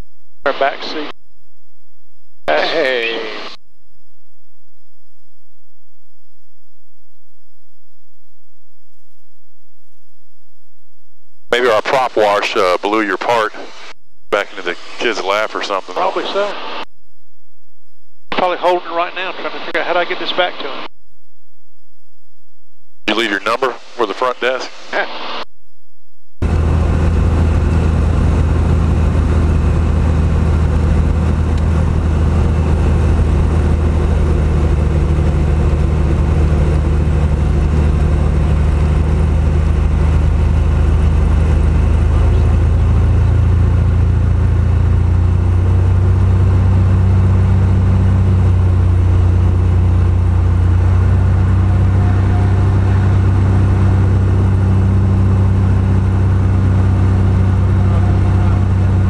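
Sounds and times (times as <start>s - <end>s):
propeller plane engine droning: 0.0s - 1.2s, 2.1s - 4.1s, 11.5s - 16.9s, 17.9s - 20.9s, 23.1s - 25.4s, 26.4s - 59.0s.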